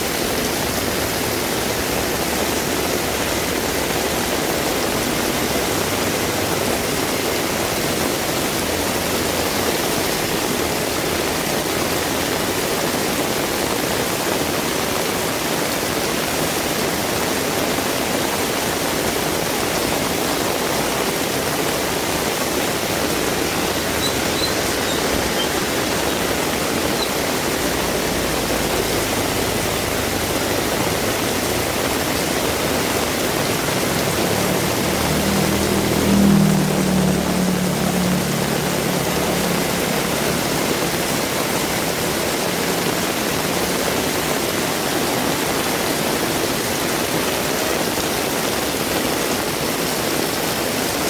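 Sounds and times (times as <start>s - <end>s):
heavy rain pouring: 0.0s - 51.0s
passing vehicle engine hum: 19.0s - 43.1s.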